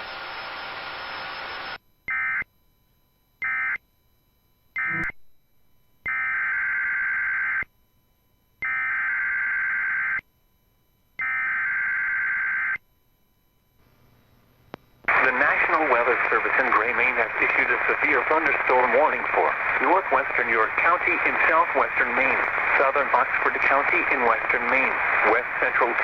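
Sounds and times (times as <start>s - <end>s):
radio hiss: 15.0s - 26.0s.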